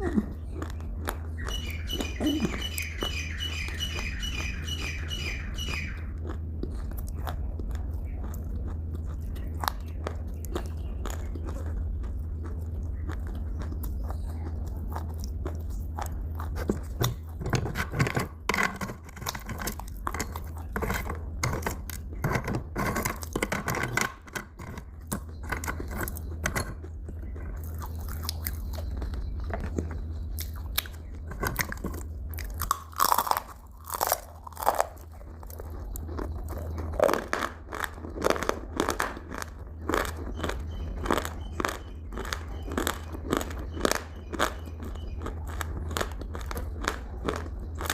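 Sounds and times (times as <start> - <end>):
person chewing crunchy food: 0.0 - 47.9.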